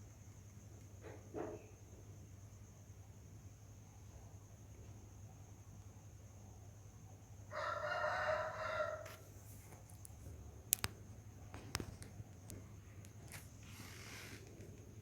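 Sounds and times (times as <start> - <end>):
rooster crowing: 7.5 - 9.2
sharp clicks: 10.0 - 11.0.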